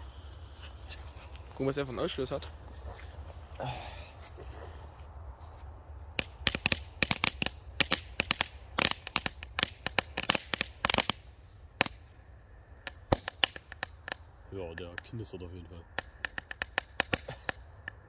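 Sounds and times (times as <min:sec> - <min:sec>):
firework fountain crackling: 0:06.2 - 0:12.0.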